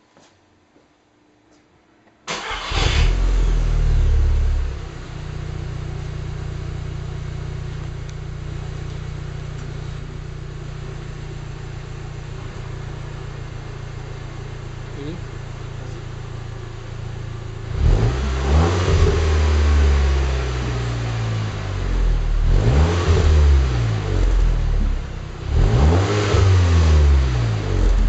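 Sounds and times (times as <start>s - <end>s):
car engine starting and revving: 2.3s - 13.0s, 16.5s - 28.0s
car engine idling: 2.3s - 28.0s.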